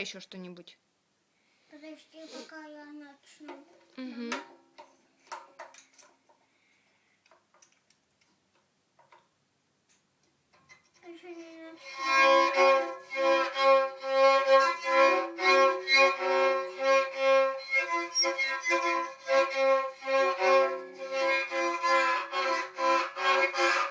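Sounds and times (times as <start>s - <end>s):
scratchy violin playing: 11.7s - 23.9s.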